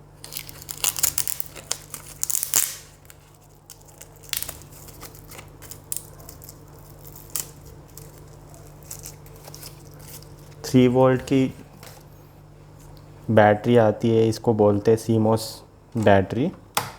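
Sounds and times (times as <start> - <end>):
scratching and crinkling: 0.2 - 12.1.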